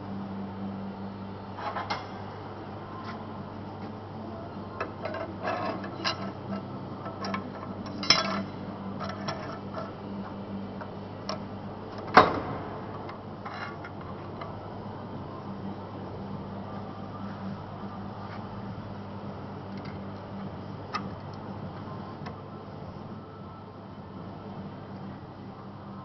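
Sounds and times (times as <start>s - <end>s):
steady low hum: 0.0s - 26.0s
metal clinks and knocks: 5.0s - 9.9s.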